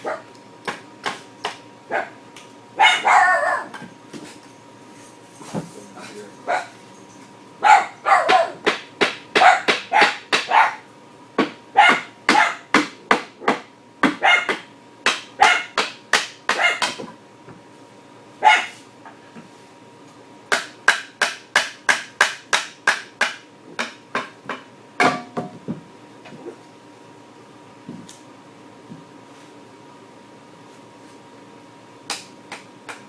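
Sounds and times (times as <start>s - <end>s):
dog barking: 0.0s - 0.3s, 1.9s - 2.2s, 2.8s - 3.7s, 6.4s - 6.8s, 7.6s - 8.6s, 9.4s - 10.9s, 11.7s - 12.7s, 14.2s - 14.6s, 15.4s - 15.8s, 16.6s - 17.0s, 18.4s - 18.8s.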